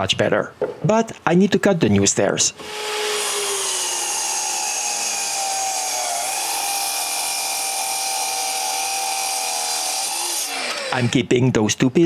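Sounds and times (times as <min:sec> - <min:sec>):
electric power saw whining: 0:02.6 - 0:11.2.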